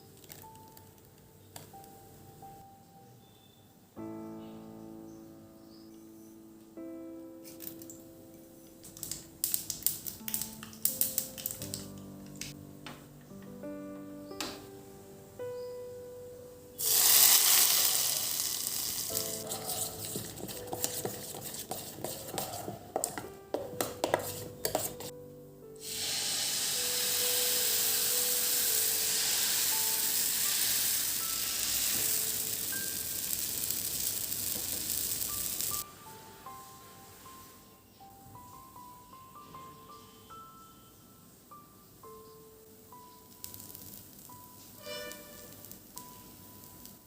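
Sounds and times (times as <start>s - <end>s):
soft background music: 0.0s - 47.0s
food sizzling in hot oil: 16.8s - 20.3s, 25.8s - 35.8s, 43.3s - 47.0s
spoon stirring against pan: 19.1s - 25.1s.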